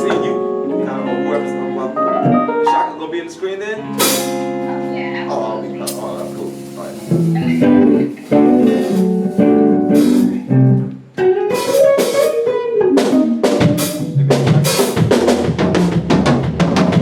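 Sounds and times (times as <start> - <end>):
drum kit hitting: 0.0 - 0.4, 3.8 - 4.9, 5.8 - 17.0
electric guitar notes: 0.0 - 14.6.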